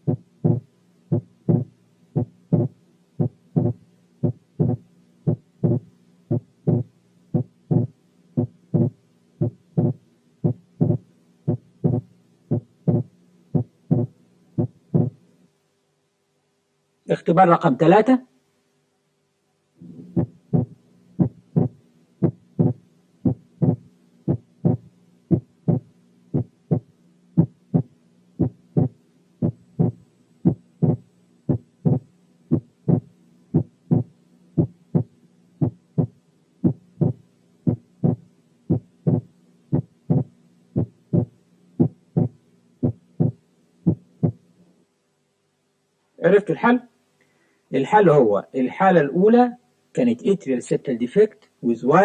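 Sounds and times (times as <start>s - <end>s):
heartbeat through stethoscope: 0.0s - 15.2s, 19.9s - 44.4s
low hum: 0.0s - 15.4s, 19.8s - 44.4s.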